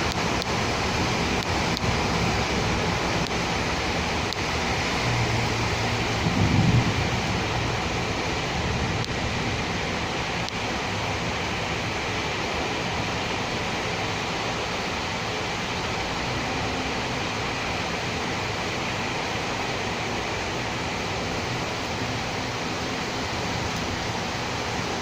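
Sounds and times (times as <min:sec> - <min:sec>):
steady rain falling: 0:00.0 - 0:25.0
low rumble: 0:05.2 - 0:09.3.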